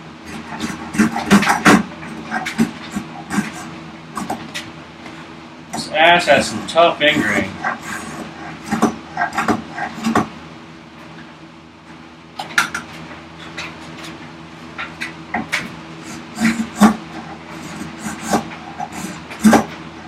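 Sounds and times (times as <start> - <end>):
spokeshave scraping wood: 0.2 - 5.2, 5.8 - 10.3, 14.8 - 19.8.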